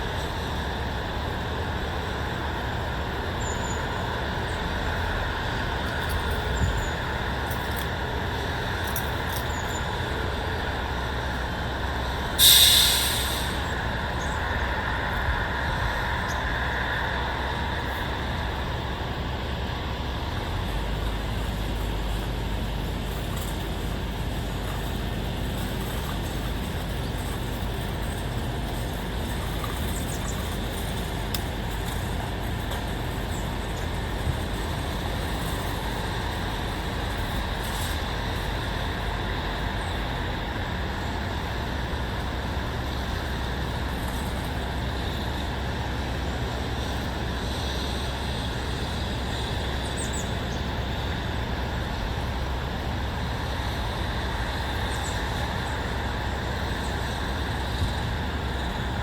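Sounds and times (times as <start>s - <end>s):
distant road traffic rumble: 0.0s - 59.0s
sudden loud hiss: 9.5s - 19.8s.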